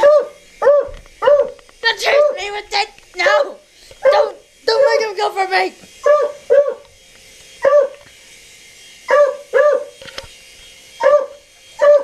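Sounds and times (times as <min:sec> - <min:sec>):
dog barking: 0:00.0 - 0:01.6, 0:04.0 - 0:04.4, 0:06.0 - 0:06.8, 0:07.6 - 0:08.0, 0:09.1 - 0:09.9, 0:11.0 - 0:12.0.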